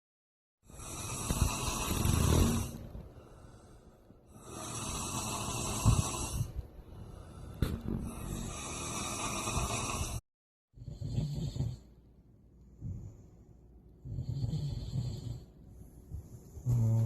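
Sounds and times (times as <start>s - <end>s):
man snoring: 0.7s - 2.9s, 4.3s - 6.6s, 7.3s - 10.2s, 10.8s - 11.9s, 14.0s - 15.5s, 16.6s - 17.0s.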